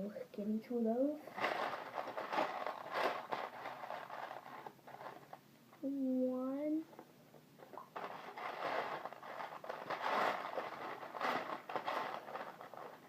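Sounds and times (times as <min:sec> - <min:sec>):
plastic bricks rummaged by hand: 0:01.3 - 0:05.4, 0:07.6 - 0:13.0.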